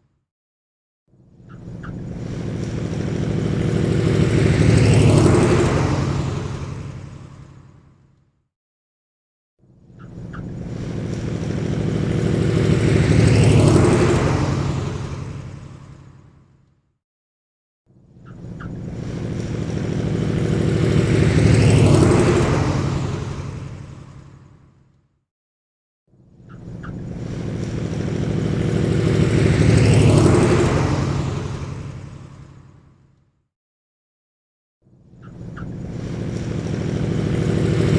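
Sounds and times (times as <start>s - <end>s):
propeller engine passing by: 1.5s - 8.2s, 9.8s - 16.6s, 18.0s - 24.9s, 26.4s - 33.2s, 35.1s - 37.9s.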